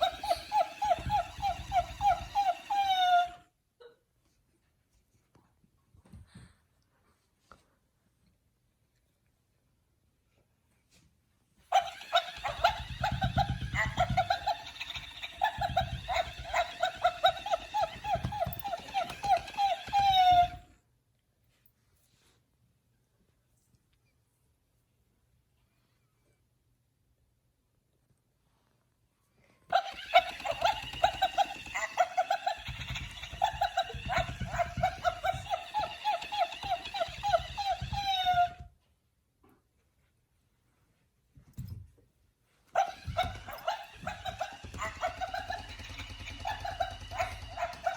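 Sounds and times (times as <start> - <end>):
dog toy squeaker squeaking: 0.0 - 3.4, 11.7 - 20.7, 29.7 - 38.7, 42.8 - 47.9.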